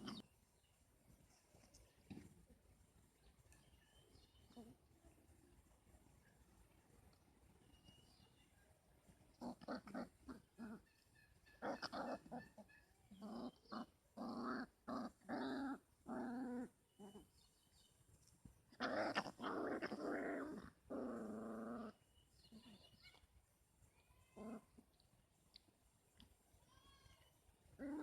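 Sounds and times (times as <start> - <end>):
dog barking and growling: 0.0 - 0.2, 9.3 - 10.9, 11.5 - 17.2, 18.7 - 22.0, 27.8 - 28.0.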